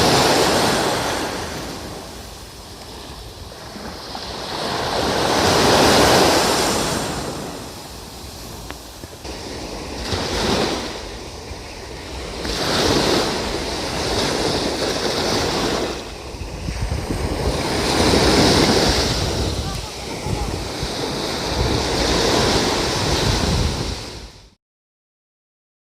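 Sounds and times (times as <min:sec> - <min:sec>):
waves breaking on a sandy beach: 0:00.0 - 0:24.6
wind rumbling on microphone: 0:00.0 - 0:24.6.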